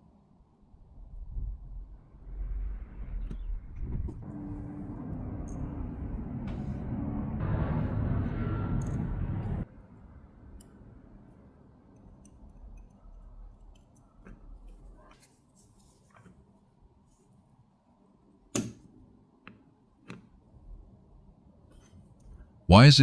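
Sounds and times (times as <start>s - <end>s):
tweezers clicking on small steel parts: 18.6s - 18.8s.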